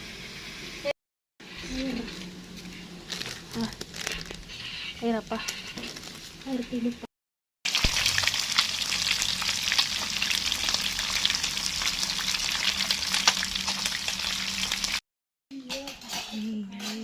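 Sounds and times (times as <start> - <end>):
food sizzling in hot oil: 0.0 - 1.6, 7.7 - 15.0.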